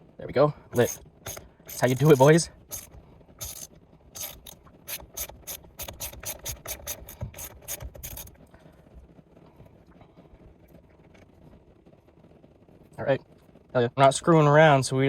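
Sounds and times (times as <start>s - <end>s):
ratchet wrench clicking: 0.8s - 8.3s.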